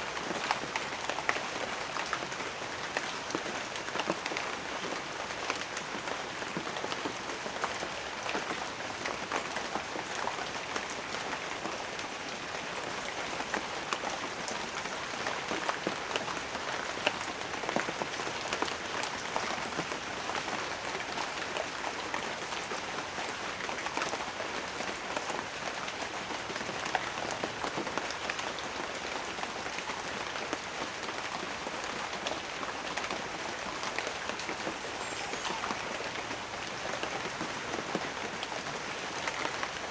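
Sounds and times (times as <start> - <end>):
rain drops pattering: 0.0 - 39.9.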